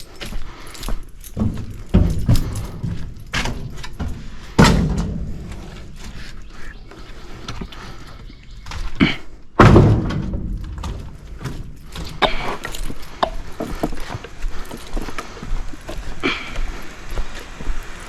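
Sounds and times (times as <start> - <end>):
heavy bangs of shed demolition: 1.4 - 6.1, 9.5 - 12.7.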